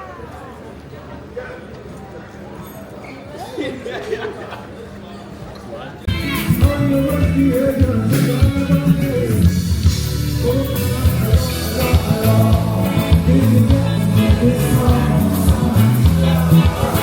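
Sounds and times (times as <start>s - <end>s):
loud music with heavy bass: 6.1s - 17.0s
person singing: 6.1s - 17.0s.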